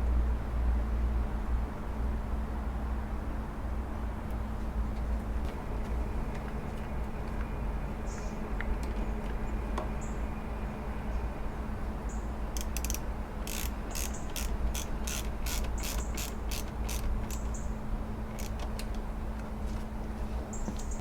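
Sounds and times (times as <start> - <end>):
socket wrench ratchet clicking: 12.6 - 17.7, 18.3 - 18.9.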